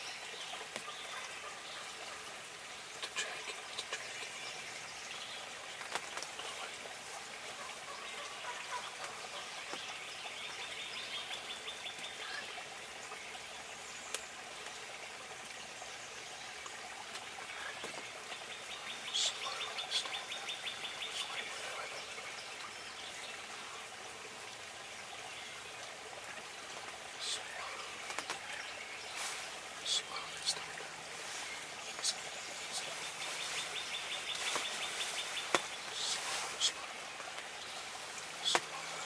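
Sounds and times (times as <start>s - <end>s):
songbird rapid trill: 27.2s - 36.8s.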